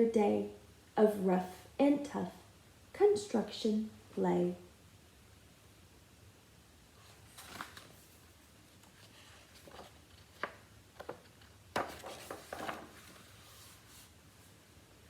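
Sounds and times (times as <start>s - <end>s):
paper rustles and taps: 8.8s - 13.3s.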